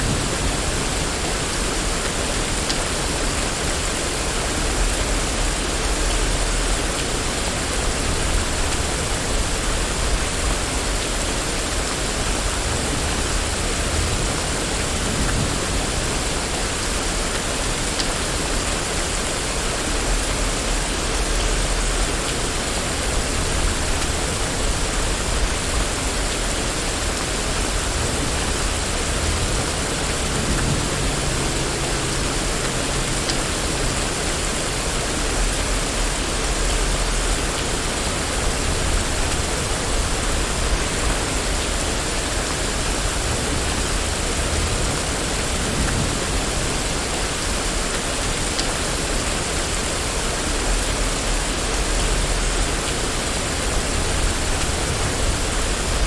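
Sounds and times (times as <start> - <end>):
rain falling on street: 0.0 - 56.0
low rumbles: 23.6 - 47.9.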